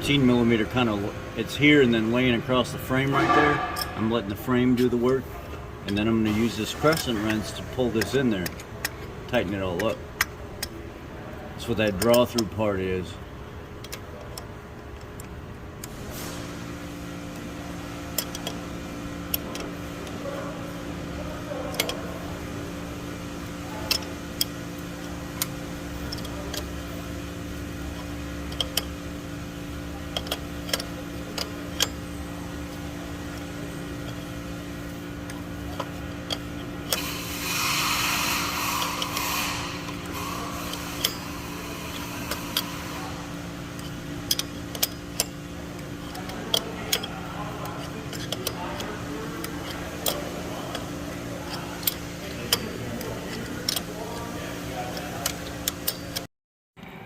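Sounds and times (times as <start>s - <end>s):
steady hum: 0.0s - 57.0s
wrench clicking on metal: 5.9s - 10.8s, 11.7s - 12.6s, 18.1s - 18.6s, 19.3s - 20.2s, 21.6s - 22.1s, 23.8s - 29.1s, 29.7s - 34.5s, 35.2s - 56.3s.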